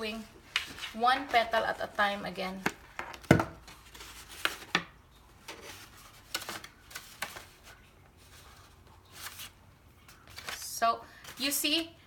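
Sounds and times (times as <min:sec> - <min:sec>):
paper rustling: 0:00.5 - 0:02.2, 0:05.4 - 0:11.8.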